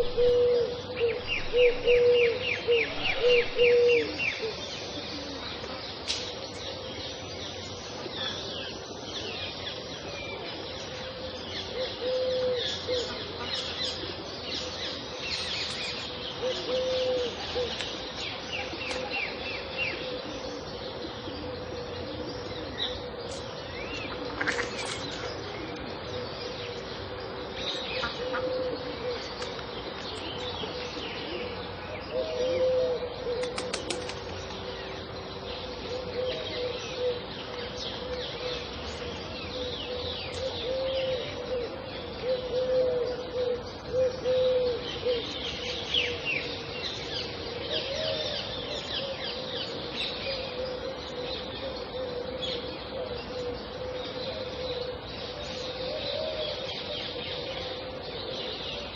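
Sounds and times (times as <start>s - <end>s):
steady low tone: 0.0s - 5.7s
low arched bird calls: 0.0s - 58.9s.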